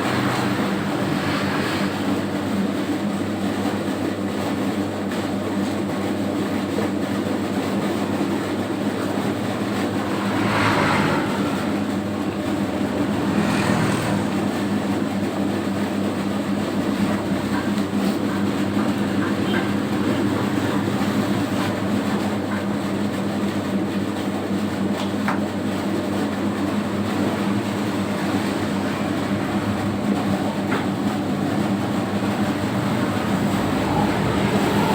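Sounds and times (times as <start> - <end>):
dough mixer motor humming: 7.5 - 34.9
rushing scraping swells: 9.5 - 14.8.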